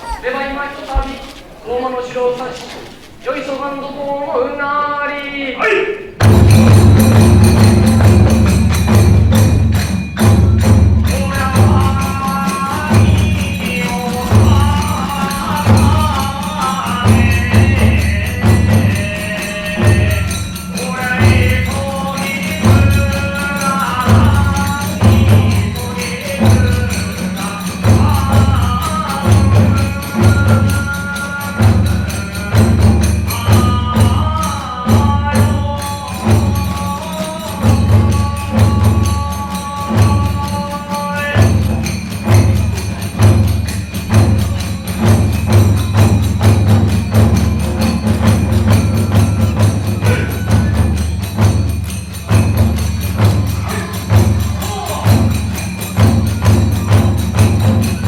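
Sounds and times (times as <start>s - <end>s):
small drums: 6.1s - 58.0s
hand cymbals clashing: 6.2s - 58.0s
large drum beating: 6.2s - 58.0s
bamboo flute melody: 44.0s - 51.5s.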